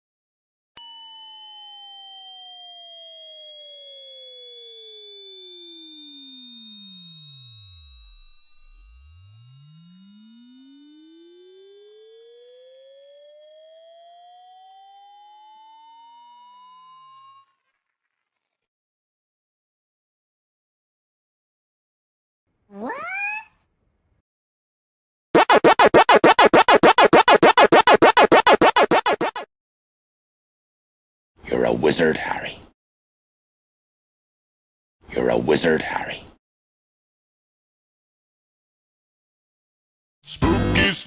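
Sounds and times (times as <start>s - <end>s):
piercing high test tone: 0.8s - 17.6s, 25.4s - 29.4s
pure tone sliding down and up: 0.8s - 17.6s, 25.4s - 29.4s.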